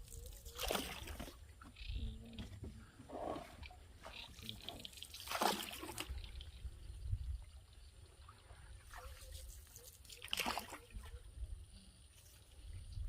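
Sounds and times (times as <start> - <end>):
water splashing against canoe: 0.0 - 6.5.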